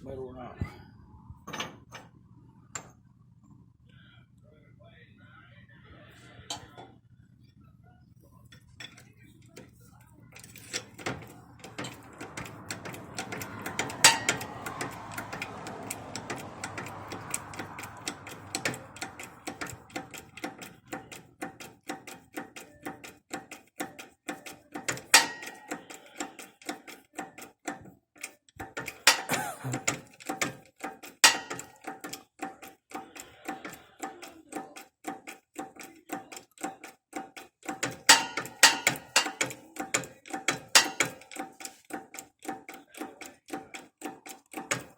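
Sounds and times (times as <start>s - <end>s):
metal-on-metal tapping: 10.4s - 26.0s, 28.6s - 33.8s, 34.6s - 42.8s
hard metal strikes: 11.6s - 14.8s, 38.1s - 39.4s.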